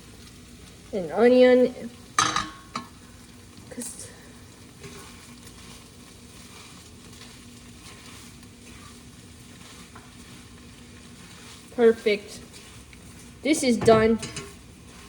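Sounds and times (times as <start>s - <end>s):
food sizzling in a frying pan: 0.0s - 15.0s
utensil clattering against pan: 2.2s - 2.9s, 13.6s - 14.6s.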